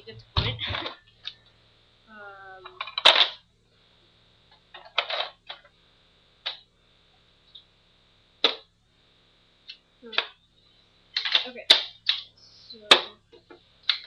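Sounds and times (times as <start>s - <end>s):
plastic clicks and clatter: 11.2s - 12.2s.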